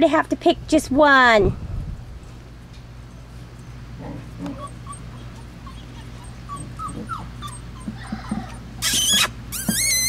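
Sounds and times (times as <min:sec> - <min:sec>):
puppies whimpering: 0:03.5 - 0:10.0.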